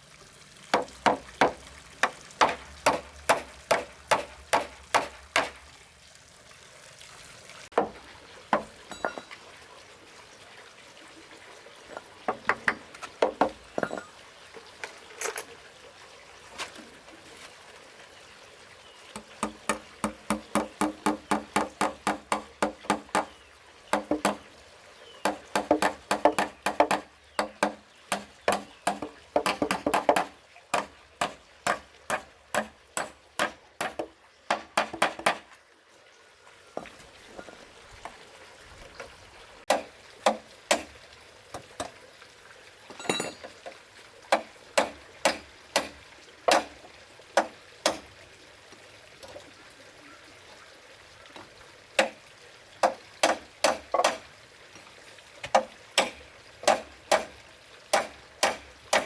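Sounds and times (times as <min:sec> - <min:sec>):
hand tool knocking timber: 0:00.7 - 0:05.6, 0:12.3 - 0:14.1, 0:19.2 - 0:23.3, 0:23.9 - 0:24.4, 0:25.2 - 0:35.4, 0:44.3 - 0:46.7, 0:52.8 - 0:54.2, 0:55.4 - 0:57.3, 0:57.9 - 0:59.0.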